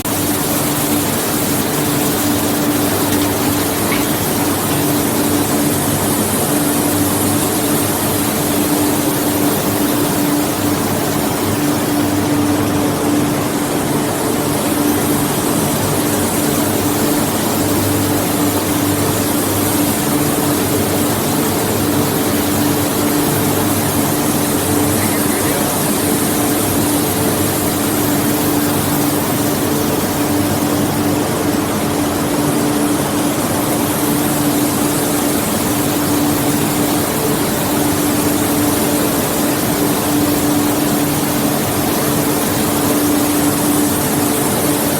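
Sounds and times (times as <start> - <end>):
ring rolling machine drone: 0.0 - 10.5, 18.8 - 30.8.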